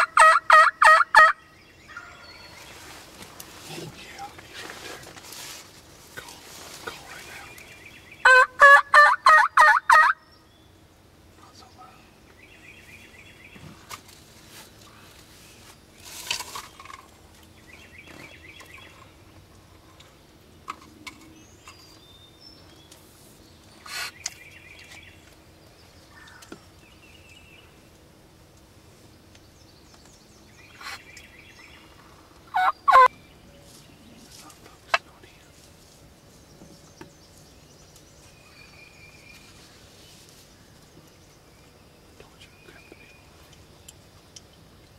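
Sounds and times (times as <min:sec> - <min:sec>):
turkey gobbling: 0:00.0 - 0:01.4, 0:08.2 - 0:10.2, 0:32.5 - 0:33.1
faint bird calls: 0:25.9 - 0:27.8.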